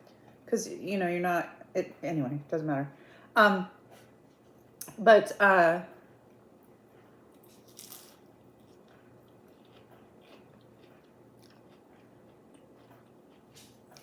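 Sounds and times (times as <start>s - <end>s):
person chewing food: 6.8s - 14.0s.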